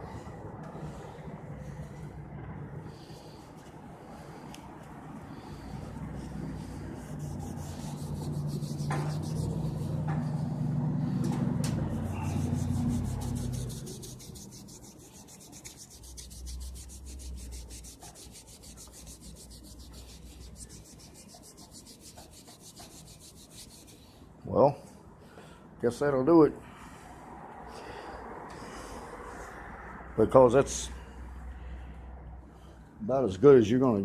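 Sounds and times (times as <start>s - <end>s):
hand rubbing metal handle: 6.6s - 24.0s.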